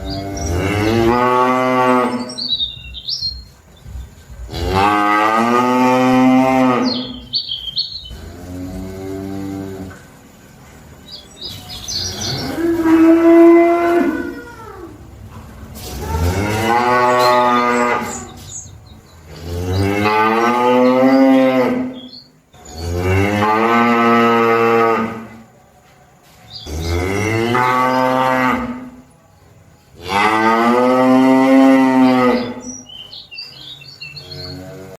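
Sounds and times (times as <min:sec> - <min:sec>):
cattle mooing: 0:00.0 - 0:03.0, 0:04.5 - 0:10.0, 0:12.0 - 0:18.7, 0:19.3 - 0:25.4, 0:26.6 - 0:29.0, 0:30.0 - 0:33.0.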